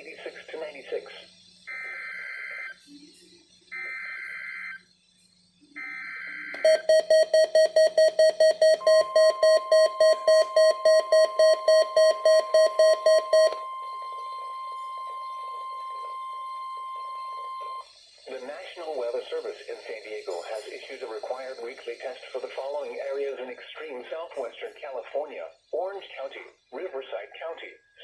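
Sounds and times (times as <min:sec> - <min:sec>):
raspy digital data screeches: 0:00.0 - 0:24.3
faint steady tone: 0:01.6 - 0:22.5
electronic alert beeper pulsing: 0:05.8 - 0:17.9.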